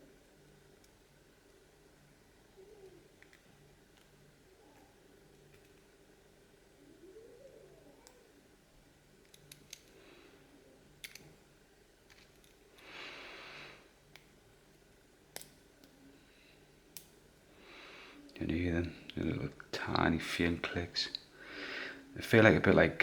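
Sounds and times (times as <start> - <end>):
soft hiss: 0.0 - 23.0
padlock pins clicking: 9.2 - 10.0, 11.0 - 11.3.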